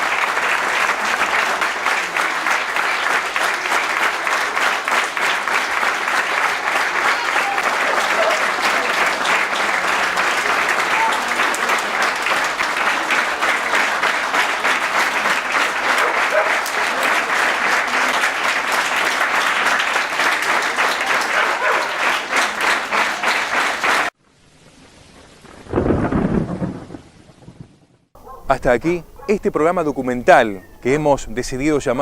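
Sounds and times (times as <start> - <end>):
crowd applauding: 0.0 - 24.2
low rumble: 24.3 - 28.1.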